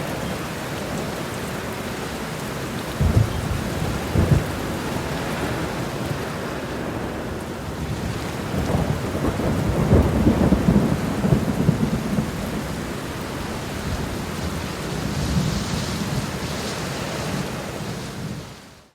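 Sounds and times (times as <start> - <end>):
heavy rain pouring: 0.0 - 18.9
thunder rumbling: 2.8 - 16.7.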